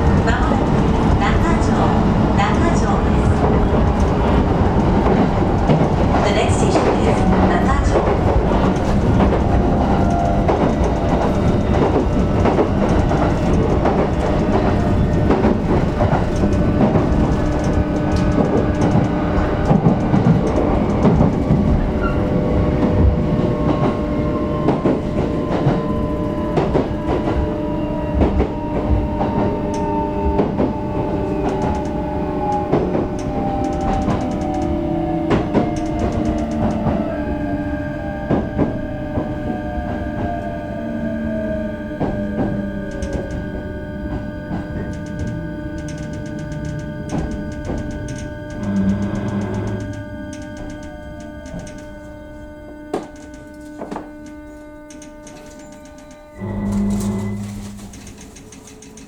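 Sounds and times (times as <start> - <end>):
wheels clicking over rail joints: 0.0 - 40.4, 41.8 - 59.0
inverter whine: 0.0 - 59.0
train running noise: 0.0 - 59.0.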